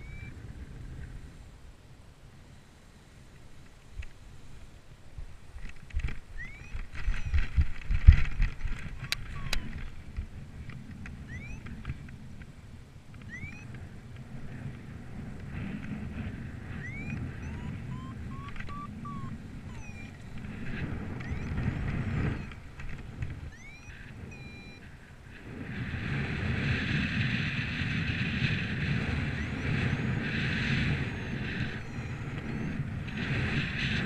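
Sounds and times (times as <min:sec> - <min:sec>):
wind buffeting microphone: 0:05.1 - 0:34.0
short rising chirps: 0:06.4 - 0:07.4, 0:11.3 - 0:11.6, 0:13.3 - 0:13.7, 0:16.8 - 0:20.4, 0:21.2 - 0:21.6, 0:23.5 - 0:24.8
sharp clicks: 0:16.8 - 0:20.5.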